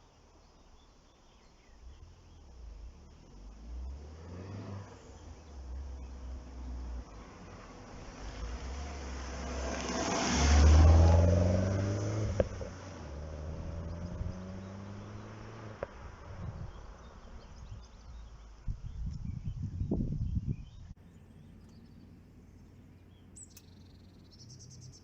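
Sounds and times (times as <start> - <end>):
car driving past: 1.7 - 18.6
sharp clicks: 23.4 - 23.8.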